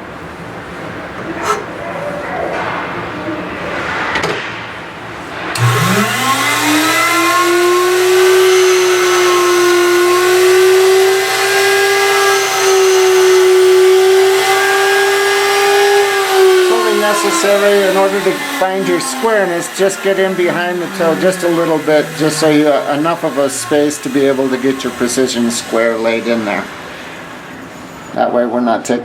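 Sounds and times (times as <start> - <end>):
grinding machine motor whine: 5.5 - 28.7.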